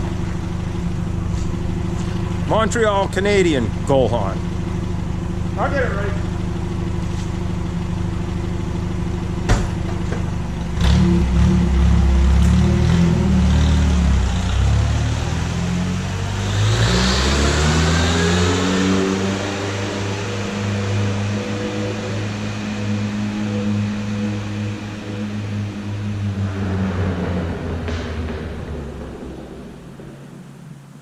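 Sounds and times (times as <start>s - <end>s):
low hum: 18.7s - 31.0s.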